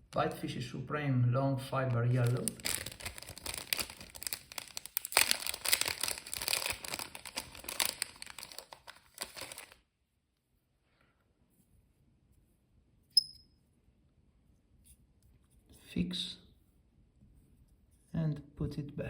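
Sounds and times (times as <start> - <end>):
plastic packet crinkling: 2.0 - 9.8.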